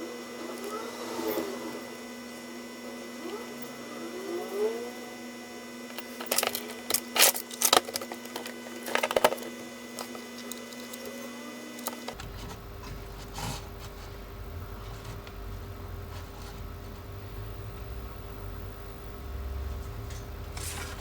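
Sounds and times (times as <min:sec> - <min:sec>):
steady electrical hum: 0:00.0 - 0:21.0
sharp clicks and rattles: 0:05.9 - 0:11.2.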